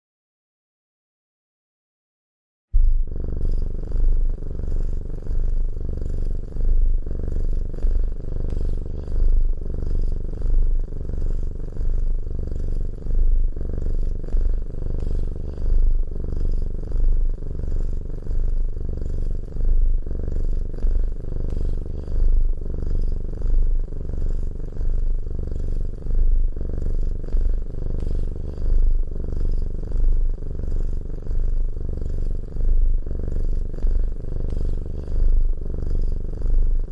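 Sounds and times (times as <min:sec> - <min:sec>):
cat purring: 0:02.8 - 0:36.9.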